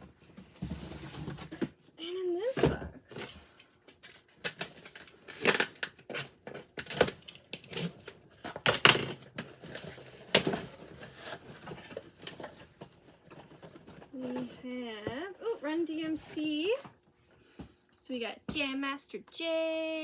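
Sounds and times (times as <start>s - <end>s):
cardboard box being unpacked: 0.0s - 1.8s, 4.0s - 14.8s.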